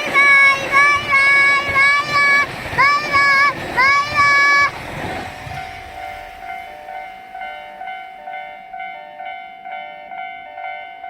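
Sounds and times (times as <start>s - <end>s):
level crossing warning bell: 5.4s - 11.0s.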